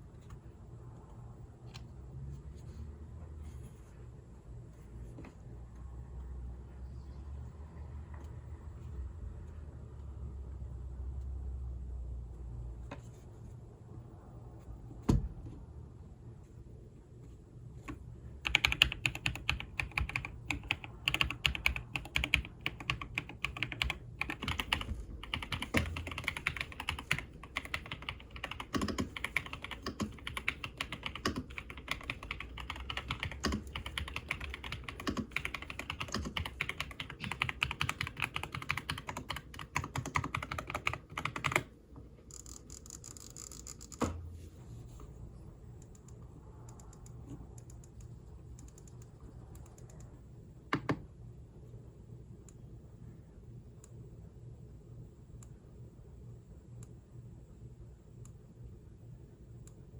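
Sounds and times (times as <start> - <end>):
mechanical keyboard typing: 18.4 - 41.7.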